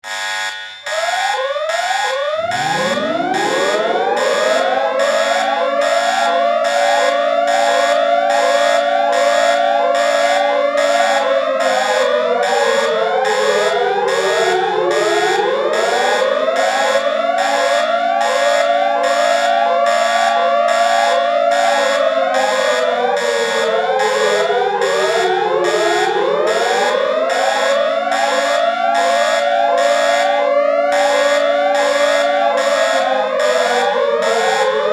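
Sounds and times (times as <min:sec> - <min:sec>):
siren wailing: 0:00.0 - 0:34.9
short rising tone: 0:02.2 - 0:05.0.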